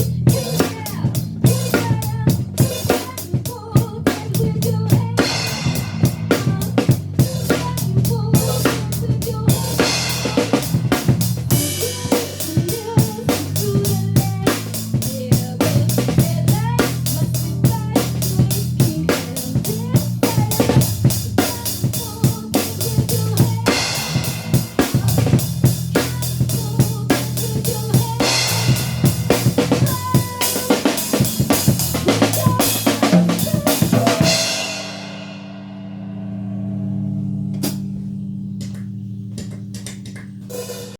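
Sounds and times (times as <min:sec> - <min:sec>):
drum kit beat: 0:00.0 - 0:40.9
low bass line: 0:22.8 - 0:30.1, 0:35.3 - 0:40.5.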